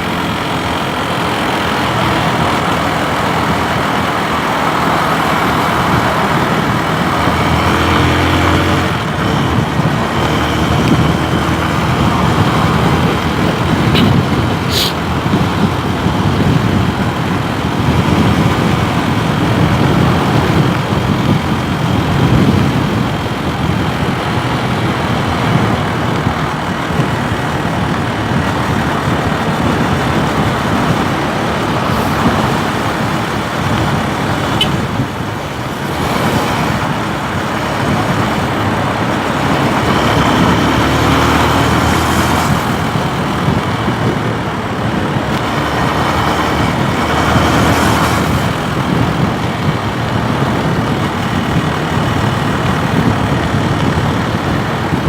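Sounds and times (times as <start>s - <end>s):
motorcycle engine running: 0.0s - 55.0s
road and wind noise: 0.0s - 55.0s.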